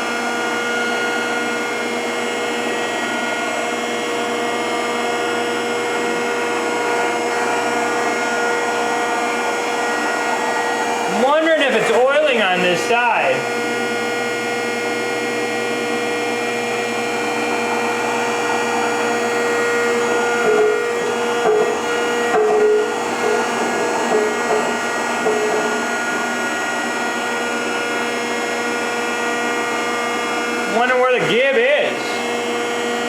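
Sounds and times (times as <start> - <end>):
hydraulic planer whine: 0.0 - 33.0
lower machine note: 13.4 - 31.2.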